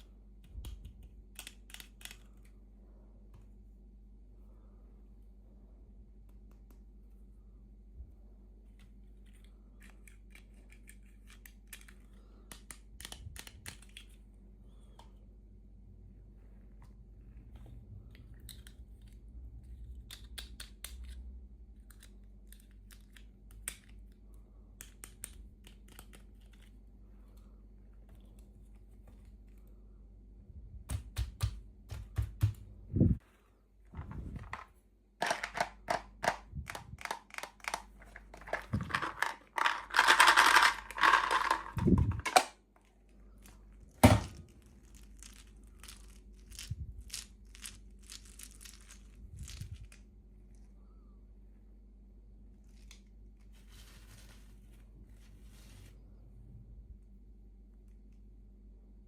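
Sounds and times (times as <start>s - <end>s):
plastic packaging crinkling: 37.0s - 50.1s.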